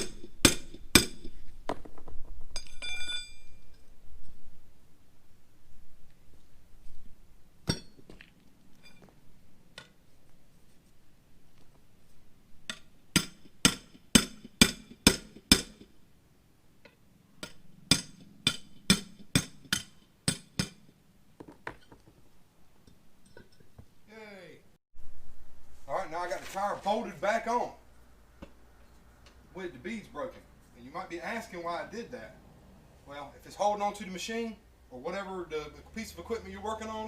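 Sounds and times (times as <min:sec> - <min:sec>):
hand tools clinking on metal: 0:02.6 - 0:03.9.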